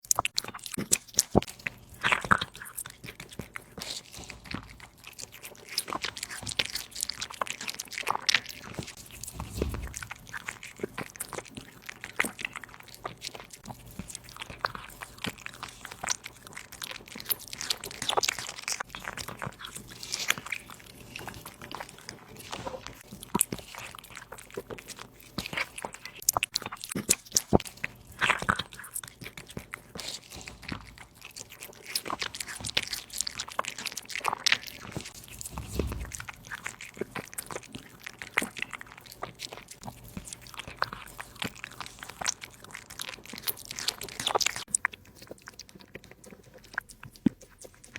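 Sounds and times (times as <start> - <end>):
kitten chewing and crunching: 0.0 - 47.9.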